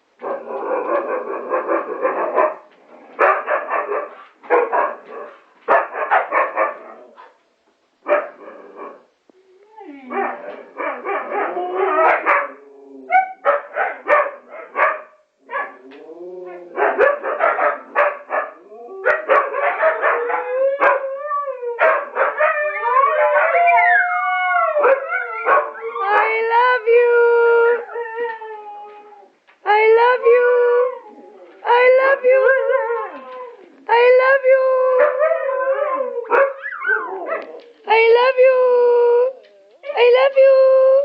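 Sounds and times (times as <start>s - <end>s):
huskies barking and yipping: 0.2s - 7.3s, 10.1s - 15.8s, 16.8s - 21.0s, 21.8s - 24.0s, 24.8s - 26.3s, 35.0s - 37.6s
huskies howling: 10.2s - 14.7s, 15.6s - 26.3s.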